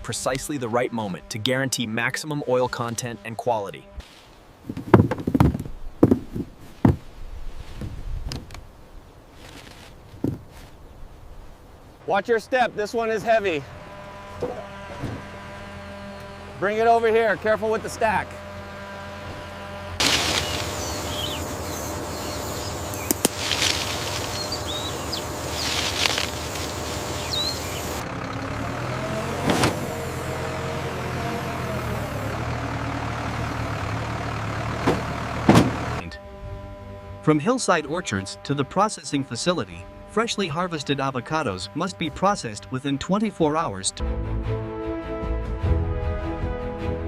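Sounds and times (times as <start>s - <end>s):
crates knocking and thumping: 4.6s - 7.1s, 10.1s - 10.6s, 34.7s - 36.0s
truck engine running: 12.7s - 44.4s
high chirps: 20.0s - 28.0s.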